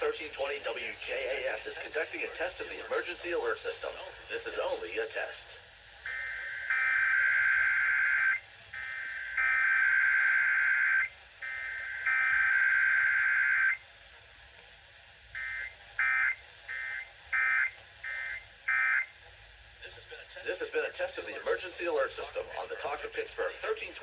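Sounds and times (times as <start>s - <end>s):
harsh buzzing data bursts: 6.0s - 13.8s.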